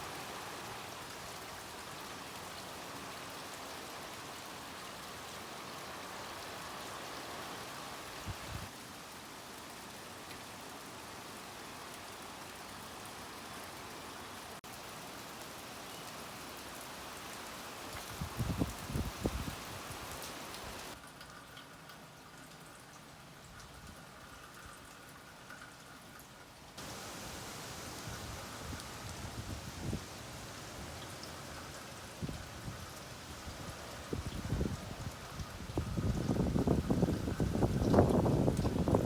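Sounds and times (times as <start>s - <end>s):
steady rain falling: 0.0s - 39.0s.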